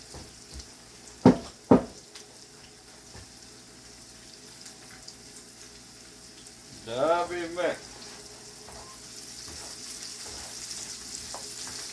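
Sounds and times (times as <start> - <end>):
food sizzling in a pan: 0.0 - 11.9
loud sharp knocks: 1.2 - 2.0.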